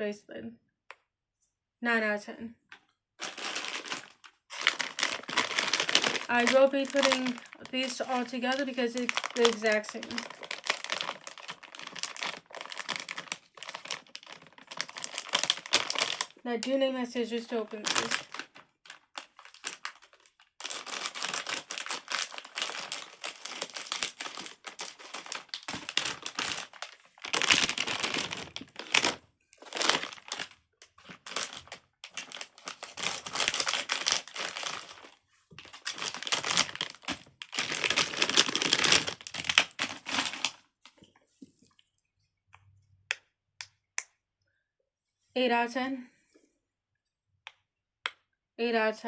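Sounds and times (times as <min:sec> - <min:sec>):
packaging crinkling and tearing: 0:03.2 - 0:16.4, 0:17.5 - 0:41.0.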